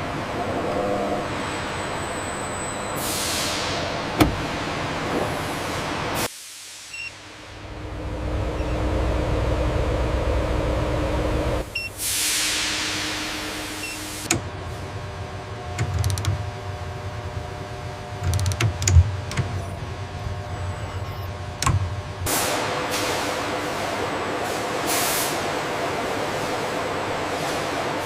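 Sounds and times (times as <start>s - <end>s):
machinery humming: 0.0s - 6.2s, 7.4s - 28.0s
air hissing: 3.0s - 4.6s, 12.0s - 14.3s.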